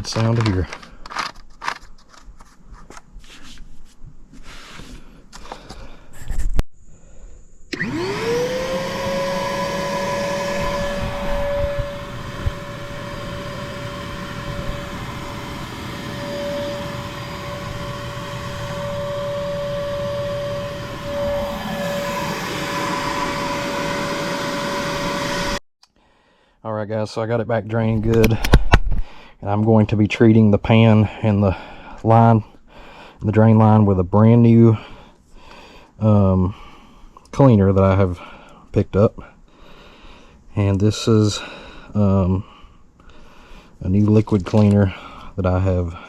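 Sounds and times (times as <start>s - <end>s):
shop vacuum motor whine: 7.7s - 25.6s.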